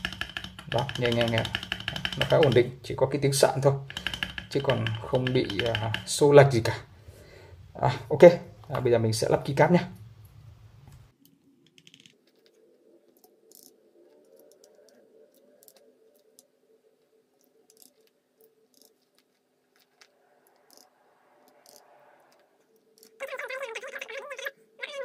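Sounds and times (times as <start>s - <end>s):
keycaps clicking onto switches: 0.0s - 2.7s, 3.8s - 6.2s.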